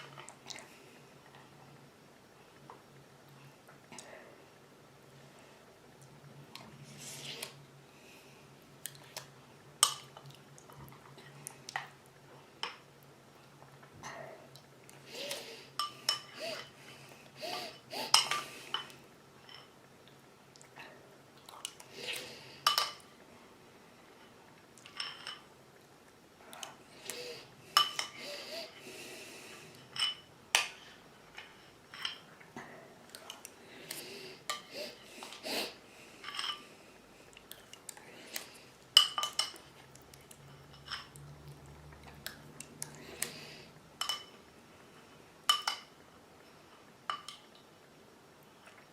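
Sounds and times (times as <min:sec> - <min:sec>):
cutlery clinking against dishes: 0:44.0 - 0:44.3.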